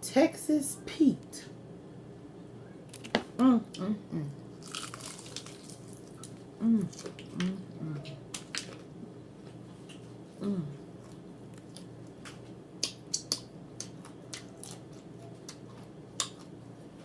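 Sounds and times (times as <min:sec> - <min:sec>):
chewing fried chicken: 0:04.5 - 0:17.0.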